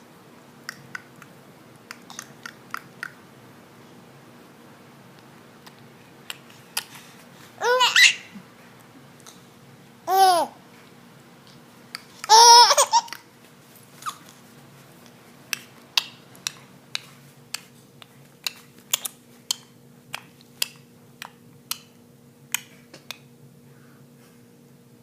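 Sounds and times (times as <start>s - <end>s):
faint steady hum: 0.0s - 25.0s
baby squealing laugh: 7.6s - 8.3s, 12.3s - 13.2s.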